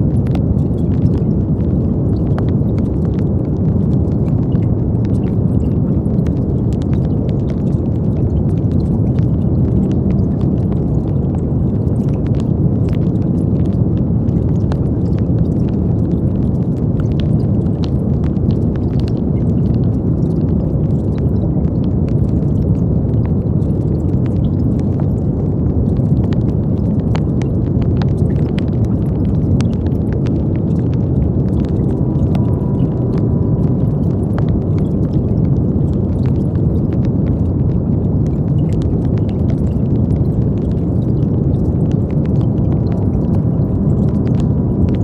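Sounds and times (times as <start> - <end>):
deep rumbling hiss: 29.8 - 36.1.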